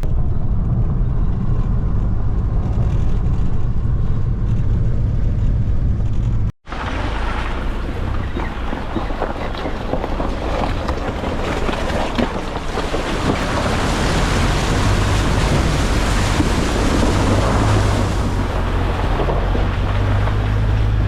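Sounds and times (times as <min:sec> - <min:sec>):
vehicle engine drone: 0:00.0 - 0:21.0
tyre noise: 0:02.7 - 0:21.0
heavy wind noise: 0:07.6 - 0:21.0.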